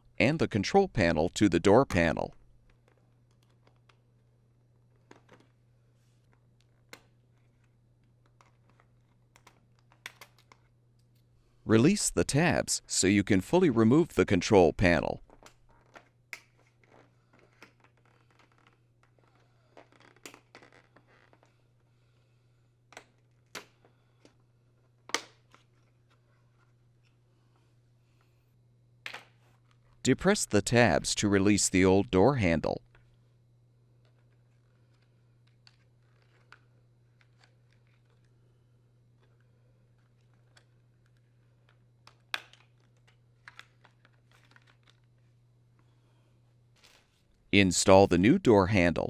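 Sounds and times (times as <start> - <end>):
faint steady hum: 0.0 - 49.0
steady low hum: 11.3 - 15.3, 29.9 - 34.0.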